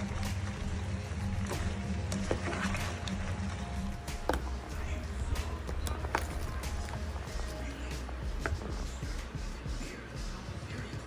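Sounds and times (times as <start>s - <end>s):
music with strong bass: 0.0s - 11.0s.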